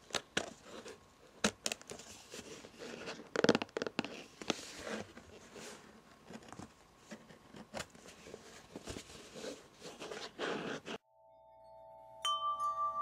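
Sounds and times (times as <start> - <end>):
soft rustling: 1.9 - 11.0.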